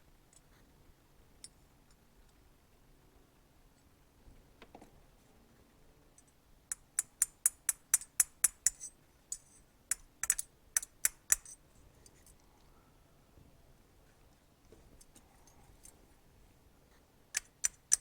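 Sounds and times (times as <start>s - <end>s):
metal tool clicks: 6.2s - 11.6s, 17.3s - 18.0s.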